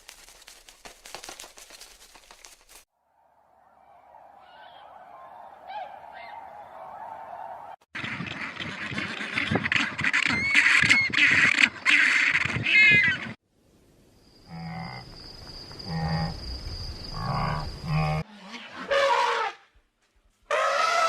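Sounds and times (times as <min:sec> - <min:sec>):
farm animals calling with squeals: 0:08.2 - 0:13.4, 0:20.5 - 0:21.0.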